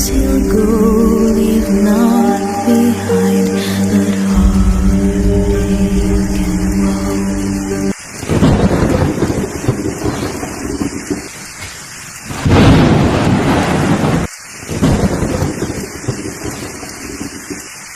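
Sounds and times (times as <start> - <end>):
rolling thunder: 0.0 - 11.2, 12.3 - 17.3
steady rain: 0.0 - 17.9.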